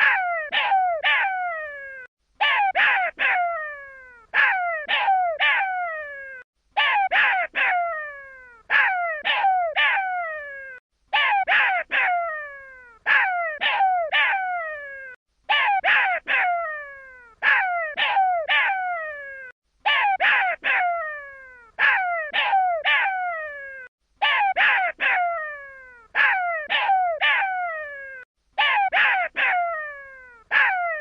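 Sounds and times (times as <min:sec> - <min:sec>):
jackal pup crying: 0:00.0 - 0:03.5, 0:08.7 - 0:12.3, 0:13.0 - 0:16.7, 0:17.4 - 0:31.0.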